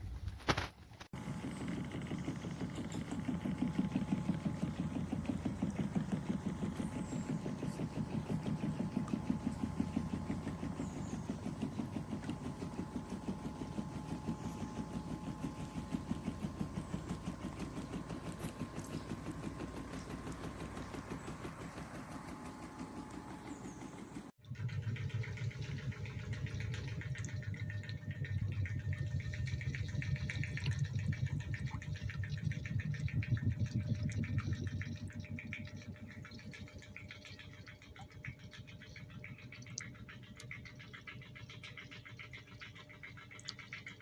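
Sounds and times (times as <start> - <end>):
faint steady hum: 0.0 - 24.4
pool cleaner mechanical pulsing: 1.0 - 44.0.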